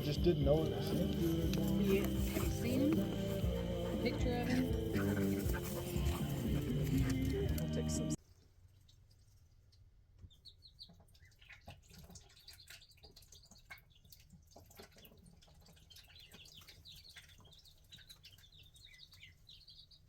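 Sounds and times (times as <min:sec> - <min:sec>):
birds chirping faintly: 0:00.0 - 0:08.2, 0:10.2 - 0:20.0
low steady rumble: 0:00.0 - 0:08.2.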